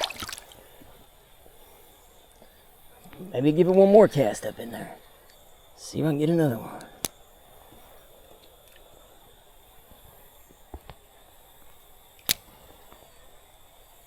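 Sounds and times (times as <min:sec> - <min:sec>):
faint outdoor background: 0:00.0 - 0:14.0
fishing reel clicks: 0:12.1 - 0:12.8.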